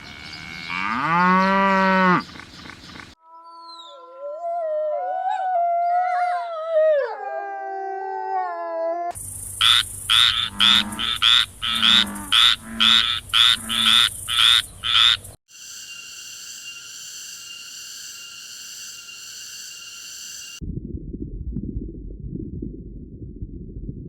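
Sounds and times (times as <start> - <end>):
frog croaking: 9.6 - 15.4.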